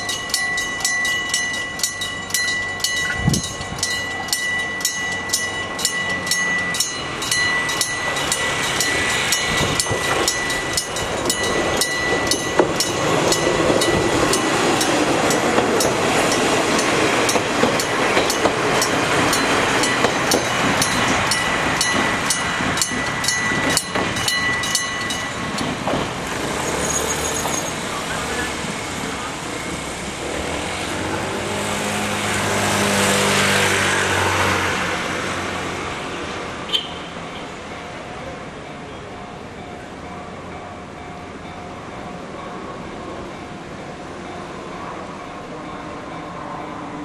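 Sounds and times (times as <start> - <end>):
level-crossing bell striking: 0.0 - 25.8
train running past: 0.0 - 47.0.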